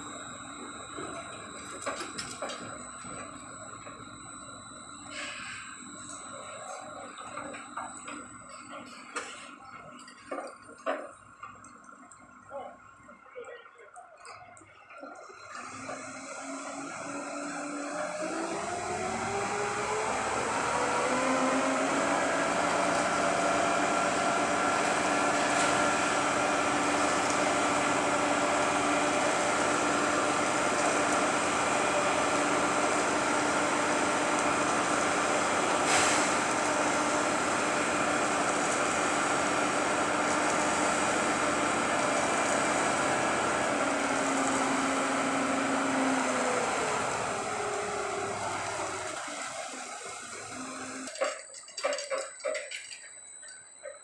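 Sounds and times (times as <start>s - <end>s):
crane engine running: 14.9s - 54.0s.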